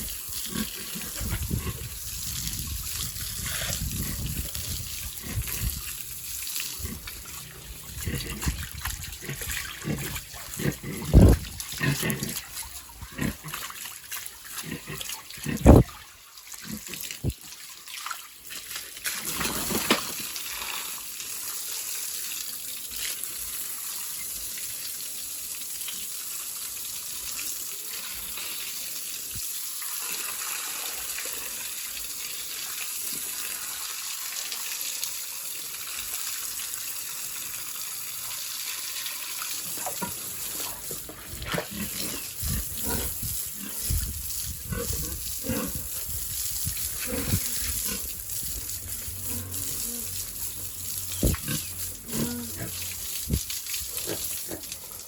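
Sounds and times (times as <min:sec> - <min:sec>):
water spraying: 0:00.0 - 0:24.8, 0:36.2 - 0:55.0.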